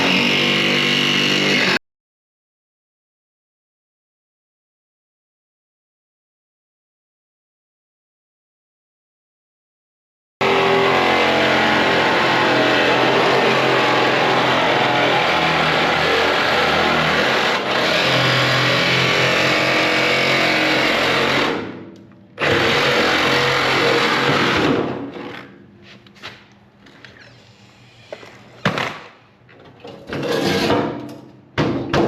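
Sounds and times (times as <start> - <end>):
reciprocating saw cutting metal: 10.4 - 21.6, 22.4 - 25.3.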